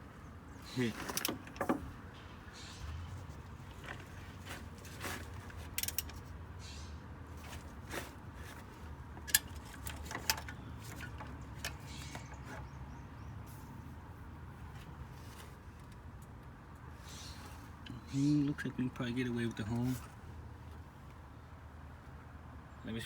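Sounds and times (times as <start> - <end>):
metallic clicks of hand tools: 5.8 - 6.2.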